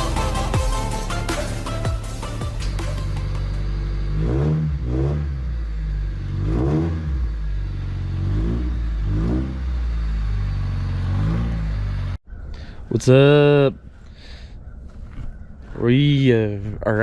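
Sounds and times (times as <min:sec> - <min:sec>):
car engine idling and revving: 0:00.0 - 0:12.2.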